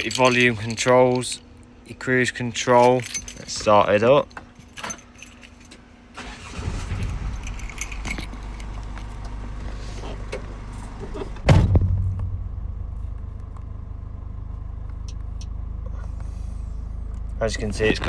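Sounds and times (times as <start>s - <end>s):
keys jangling: 0.0s - 1.4s, 2.8s - 9.3s
diesel engine starting and idling: 5.8s - 18.0s.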